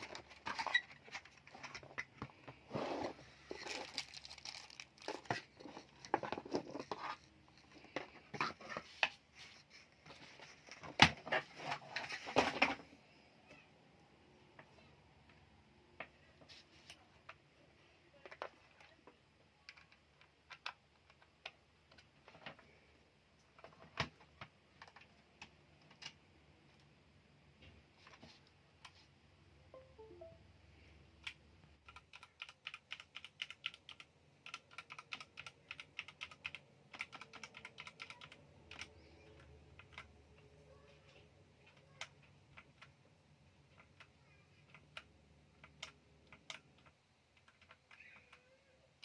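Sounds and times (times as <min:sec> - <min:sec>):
mechanical keyboard key clicks: 0:31.8 - 0:38.9.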